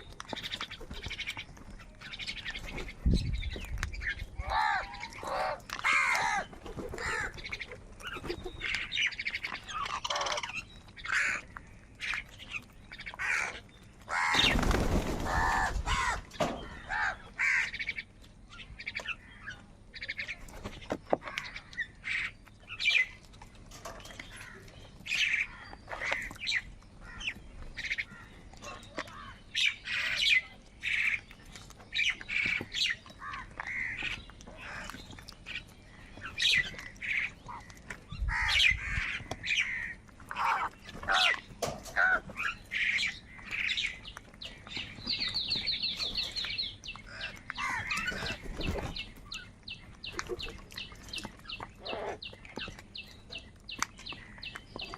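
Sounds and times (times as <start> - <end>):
crows cawing: 4.4 - 7.5, 10.0 - 11.5, 13.2 - 18.0, 33.2 - 35.0, 37.5 - 43.7, 47.1 - 48.4.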